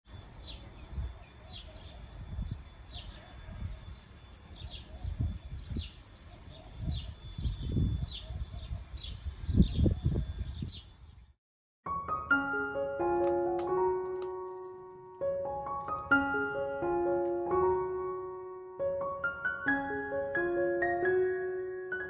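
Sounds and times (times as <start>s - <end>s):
small bird chirping: 0.1s - 11.4s.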